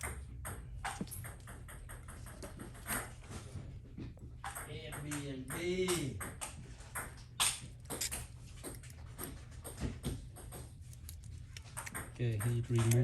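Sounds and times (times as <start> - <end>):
repair tools clicking and tapping: 4.4 - 13.0.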